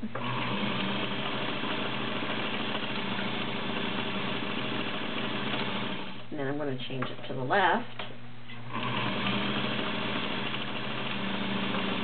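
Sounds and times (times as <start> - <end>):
sewing machine running: 0.1 - 6.2, 8.7 - 12.0.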